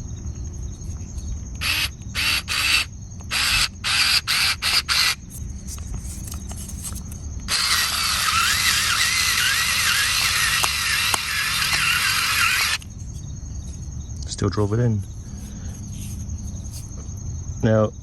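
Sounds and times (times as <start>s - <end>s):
electric screwdriver whirring: 1.6s - 5.2s, 7.5s - 12.8s.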